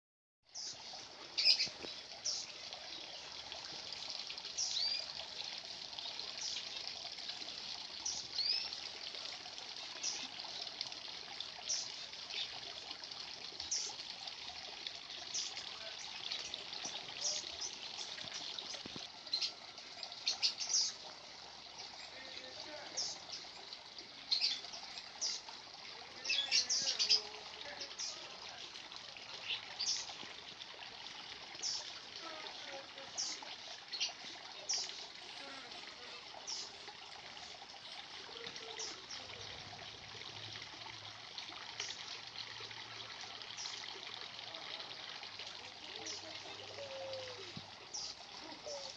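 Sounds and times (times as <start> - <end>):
trickle of running water: 0.4 - 48.9
small birds chirping: 0.5 - 3.6, 4.2 - 5.3, 5.9 - 9.0, 9.7 - 10.8, 11.6 - 12.6, 15.1 - 28.4, 29.2 - 30.3, 31.6 - 39.6, 45.9 - 48.9.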